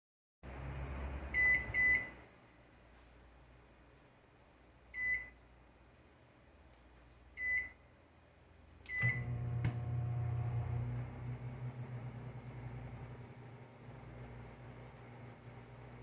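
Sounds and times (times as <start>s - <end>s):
microwave oven beeping: 1.3s - 2.2s, 8.9s - 16.0s
microwave click: 8.9s - 10.4s
microwave oven humming: 8.9s - 16.0s.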